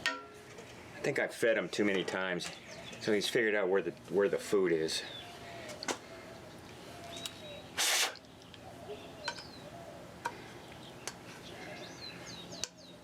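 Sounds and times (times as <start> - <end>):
birds chirping: 0.8 - 13.0
loud rush of hiss-like noise: 7.7 - 8.2.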